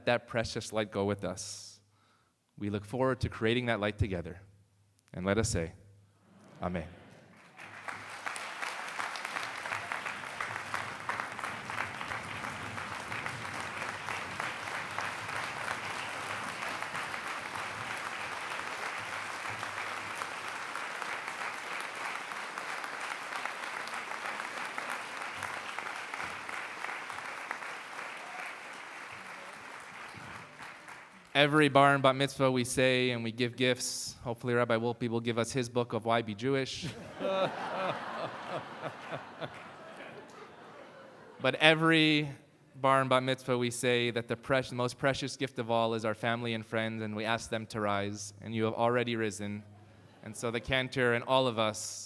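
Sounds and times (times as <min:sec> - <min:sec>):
crowd applauding: 0:07.1 - 0:31.3, 0:36.9 - 0:41.4.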